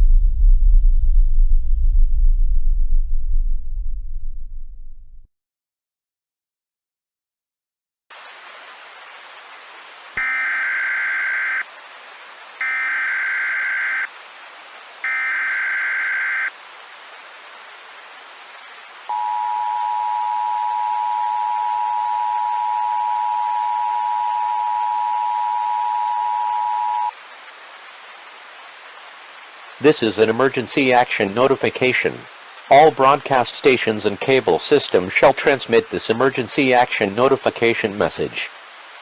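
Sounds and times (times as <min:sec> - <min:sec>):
constant hiss: 0:08.1 - 0:39.0
faint high whine: 0:08.1 - 0:39.0
warbling data bursts: 0:15.0 - 0:16.6
two-tone attention signal: 0:19.1 - 0:27.1.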